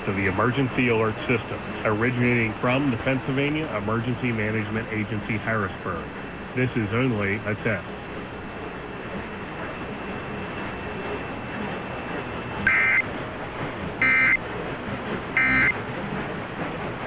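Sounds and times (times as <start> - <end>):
broadcast hiss: 0.0 - 16.8
buzzing digital data bursts: 12.7 - 13.0, 14.0 - 14.4, 15.4 - 15.7.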